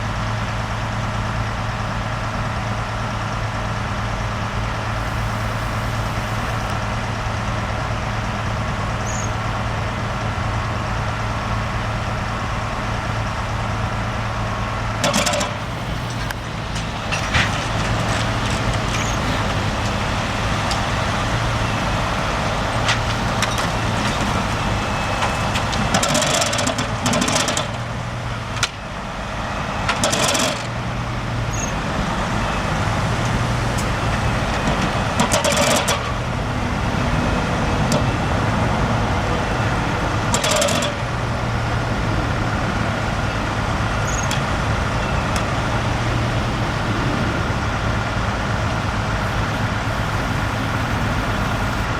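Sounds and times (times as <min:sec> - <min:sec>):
car road and engine noise: 0:00.0 - 0:51.9
low hum: 0:04.9 - 0:06.8, 0:44.3 - 0:51.9.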